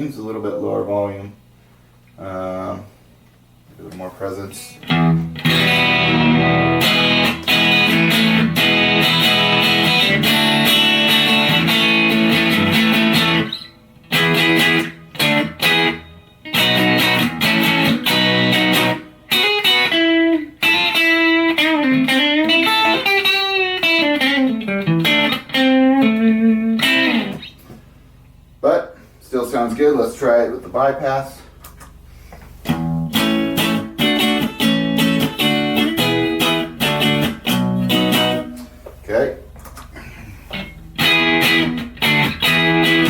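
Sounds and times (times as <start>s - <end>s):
dry electric guitar: 3.9s - 27.9s, 32.6s - 43.0s.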